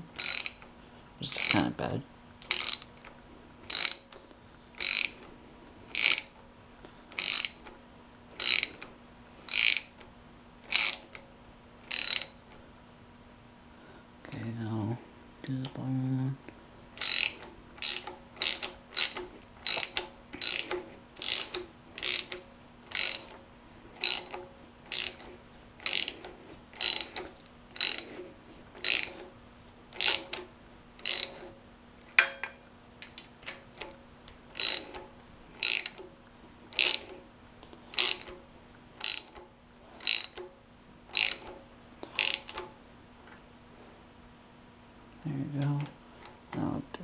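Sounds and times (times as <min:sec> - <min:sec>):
ratchet wrench clicking: 0:00.2 - 0:00.7, 0:01.3 - 0:01.6, 0:02.4 - 0:02.9, 0:03.7 - 0:04.1, 0:04.8 - 0:05.2, 0:05.9 - 0:06.3, 0:07.1 - 0:07.7, 0:08.4 - 0:08.9, 0:09.5 - 0:10.0, 0:10.7 - 0:11.2, 0:11.9 - 0:12.4, 0:17.0 - 0:23.4, 0:24.0 - 0:28.2, 0:28.8 - 0:29.2, 0:30.0 - 0:30.4, 0:31.0 - 0:31.5, 0:34.6 - 0:36.1, 0:36.8 - 0:37.2, 0:38.0 - 0:38.4, 0:39.0 - 0:39.4, 0:40.0 - 0:40.4, 0:41.1 - 0:41.6, 0:42.2 - 0:42.7.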